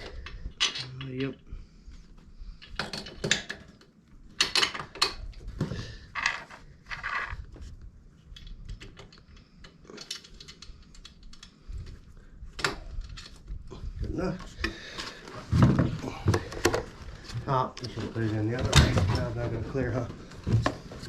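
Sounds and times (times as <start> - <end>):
metal parts and tools clinking: 0.0 - 1.4, 8.3 - 11.6.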